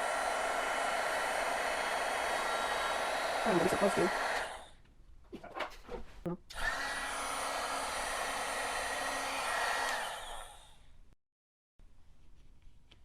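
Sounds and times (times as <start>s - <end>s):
heat gun blowing: 0.0s - 4.8s, 6.5s - 10.8s.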